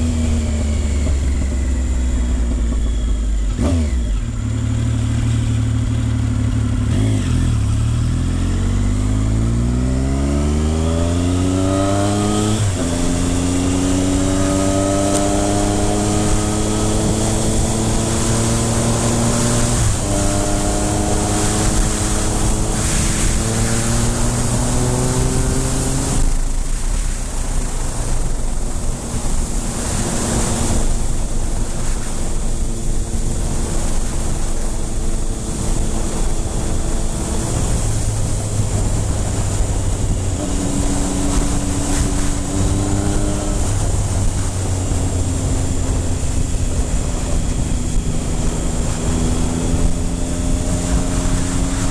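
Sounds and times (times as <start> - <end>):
motorcycle engine accelerating: 0.0 - 51.9
wind rush: 8.7 - 51.9.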